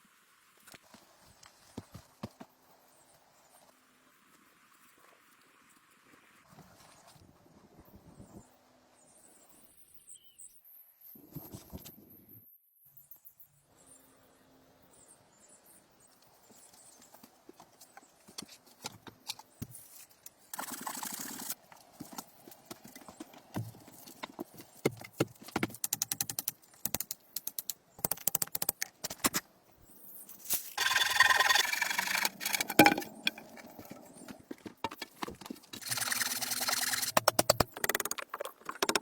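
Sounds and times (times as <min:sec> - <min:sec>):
knocks and clicks: 0:30.8 - 0:39.0
scraping rasp: 0:35.7 - 0:37.6.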